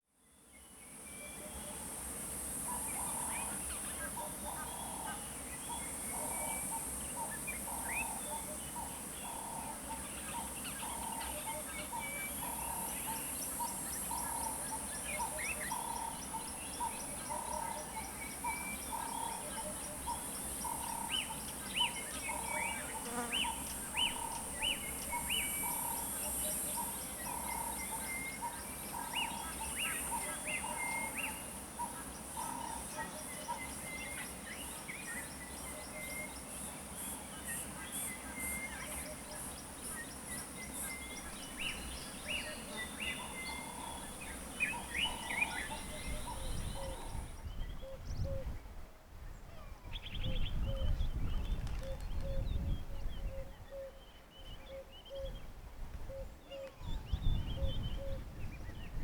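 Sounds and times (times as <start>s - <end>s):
high insect drone: 0.3s - 47.5s
birds chirping: 35.8s - 48.2s.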